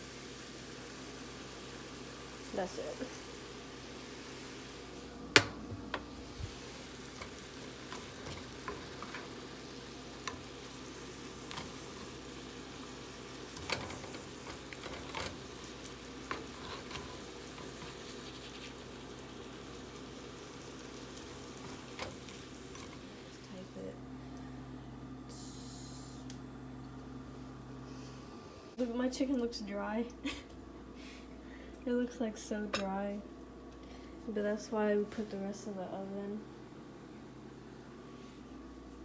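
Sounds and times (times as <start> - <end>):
vegetables sizzling in a frying pan: 0.0 - 23.8.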